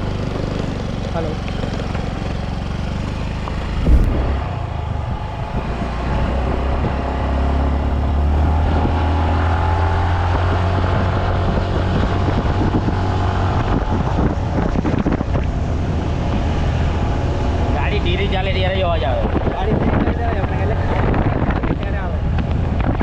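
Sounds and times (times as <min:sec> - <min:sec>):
wind on microphone: 0:03.8 - 0:04.5.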